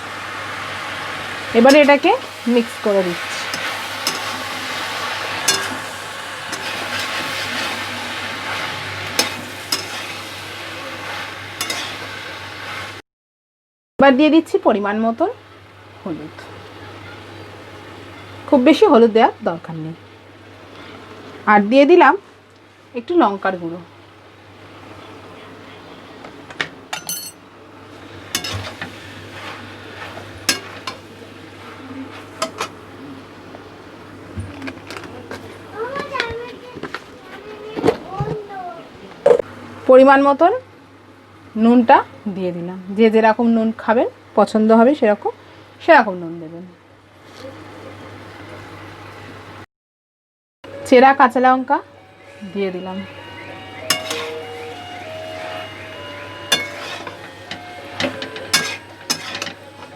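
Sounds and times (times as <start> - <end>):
vegetables sizzling in a pan: 0.0 - 13.0, 27.8 - 33.0, 52.3 - 59.9
metal utensil clinking on pan: 3.5 - 4.4, 5.4 - 5.9, 6.5 - 7.3, 9.2 - 10.1, 11.6 - 12.0, 27.0 - 27.4, 28.4 - 28.8, 30.5 - 31.0, 53.9 - 54.4, 56.5 - 59.6.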